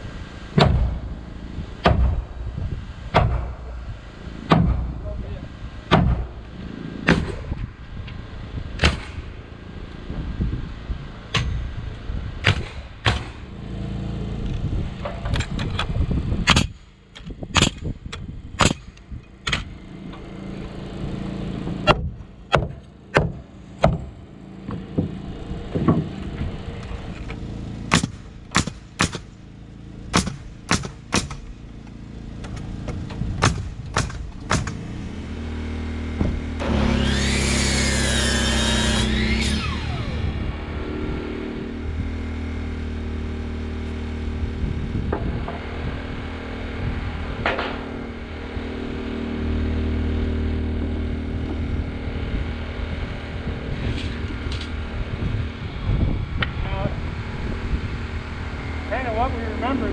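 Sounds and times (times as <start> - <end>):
nails hammered into wood: 12.4 - 13.5, 16.5 - 17.8, 18.6 - 19.7, 21.9 - 24.1, 27.9 - 29.3, 30.1 - 31.5, 33.4 - 34.9
motor whining: 36.1 - 42.0.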